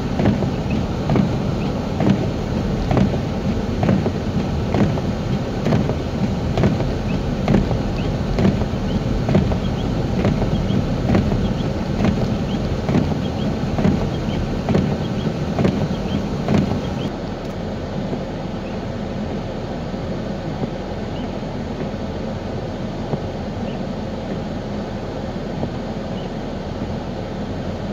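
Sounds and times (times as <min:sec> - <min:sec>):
regular thumps: 0:00.0 - 0:17.1
road and tyre rumble: 0:00.0 - 0:27.9.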